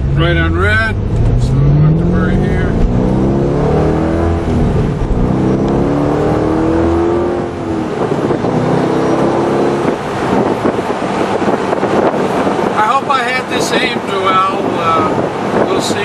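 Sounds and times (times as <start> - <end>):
car engine accelerating: 0.0 - 15.6
road and wind noise: 0.0 - 16.0.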